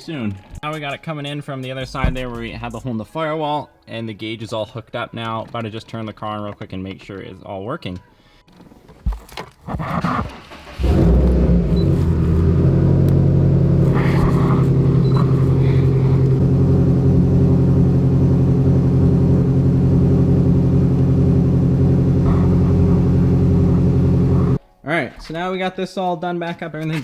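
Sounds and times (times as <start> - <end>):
car engine starting and idling: 10.2 - 24.6.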